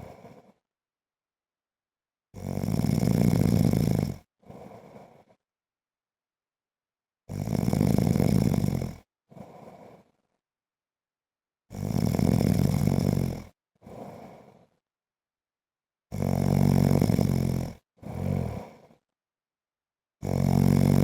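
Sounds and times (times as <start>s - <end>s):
man snoring: 0.0s - 0.6s, 2.4s - 5.4s, 7.3s - 10.2s, 11.7s - 14.8s, 16.1s - 19.0s, 20.2s - 21.0s.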